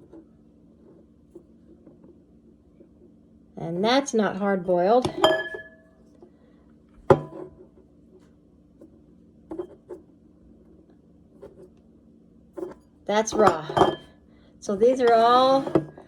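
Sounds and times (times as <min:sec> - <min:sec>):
faint steady hum: 0:00.0 - 0:16.0
eggs clinking against bowl: 0:05.0 - 0:05.8, 0:13.3 - 0:14.1.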